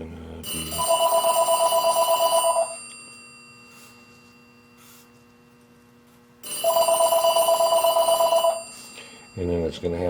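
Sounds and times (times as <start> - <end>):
electronic telephone ringing: 0.4 - 5.0, 6.4 - 9.7.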